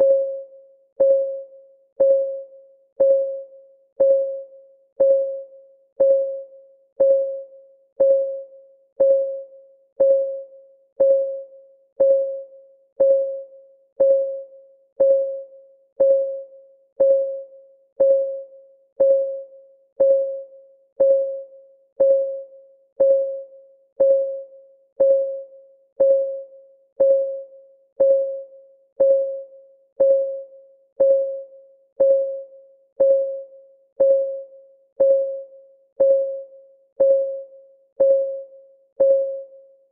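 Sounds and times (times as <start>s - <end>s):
timer ticking: 1.0s - 1.4s, 2.0s - 2.4s, 3.0s - 3.4s, 4.0s - 4.4s, 5.0s - 5.4s, 6.0s - 6.4s, 7.0s - 7.4s, 8.0s - 8.4s, 9.0s - 9.4s, 10.0s - 10.4s, 11.0s - 11.4s, 12.0s - 12.4s, 13.0s - 13.4s, 14.0s - 14.4s, 15.0s - 15.4s, 16.0s - 16.4s, 17.0s - 17.4s, 18.0s - 18.4s, 19.0s - 19.4s, 20.0s - 20.4s, 21.0s - 21.4s, 22.0s - 22.4s, 23.0s - 23.4s, 24.0s - 24.4s, 25.0s - 25.4s, 26.0s - 26.4s, 27.0s - 27.4s, 28.0s - 28.4s, 29.0s - 29.4s, 30.0s - 30.4s, 31.0s - 31.4s, 32.0s - 32.4s, 33.0s - 33.4s, 34.0s - 34.4s, 35.0s - 35.4s, 36.0s - 38.4s.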